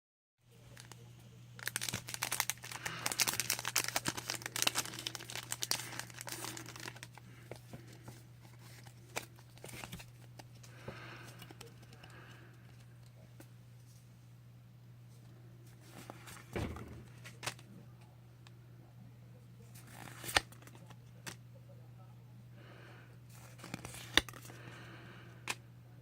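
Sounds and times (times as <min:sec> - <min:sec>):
foil wrapper crinkling and tearing: 0:00.7 - 0:10.7, 0:23.4 - 0:24.6.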